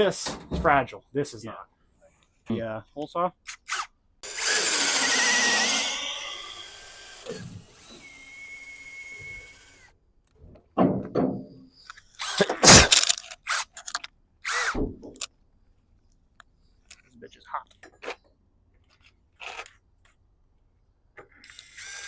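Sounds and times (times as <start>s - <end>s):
power drill hole saw whine: 4.2s - 9.9s, 12.2s - 13.1s, 21.4s - 22.0s.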